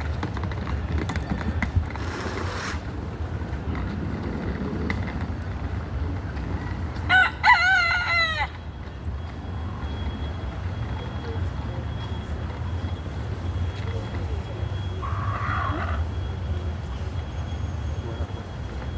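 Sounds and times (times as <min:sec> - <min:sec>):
rooster crowing: 0:07.1 - 0:08.6.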